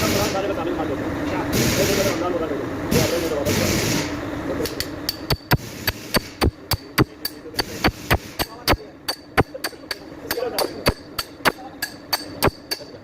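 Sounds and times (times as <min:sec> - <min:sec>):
hammer blows on metal: 0:05.1 - 0:13.0.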